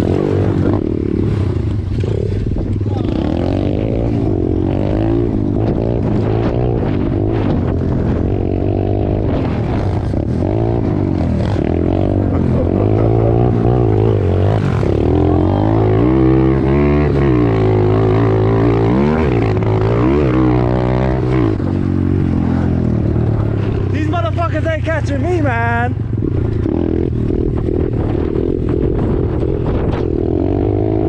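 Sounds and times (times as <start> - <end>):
low engine drone: 0.0 - 24.4
pit bike engines revving: 0.0 - 31.0.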